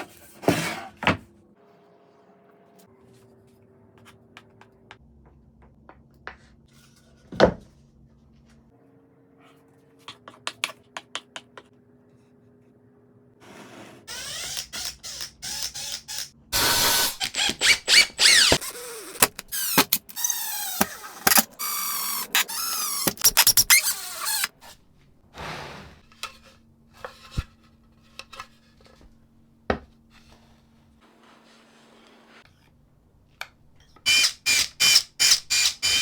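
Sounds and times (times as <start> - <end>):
power tool running in bursts: 16.6 - 24.5.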